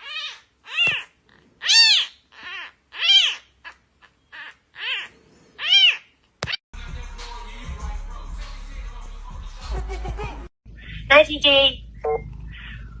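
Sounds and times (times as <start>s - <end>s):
cat meowing: 0.0s - 6.6s.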